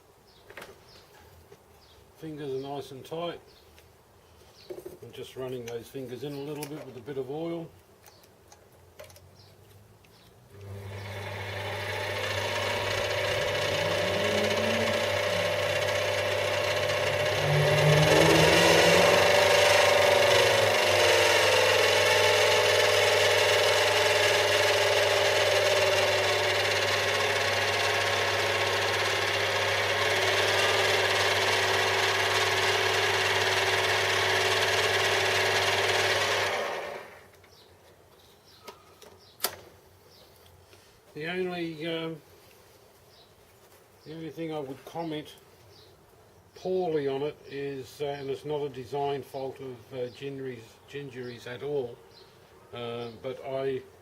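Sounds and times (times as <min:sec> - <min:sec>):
lathe motor whine: 0:10.6 - 0:37.2.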